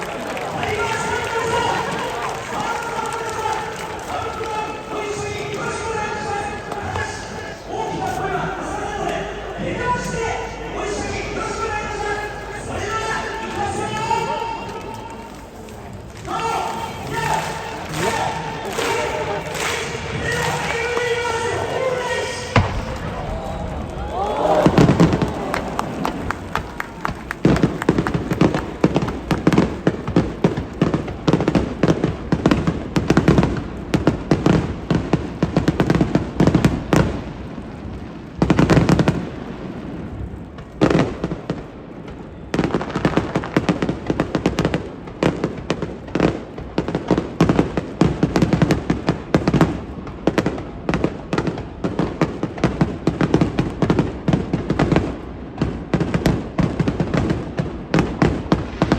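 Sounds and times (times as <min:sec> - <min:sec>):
fireworks bangs and crackles: 0:00.0 - 0:58.9.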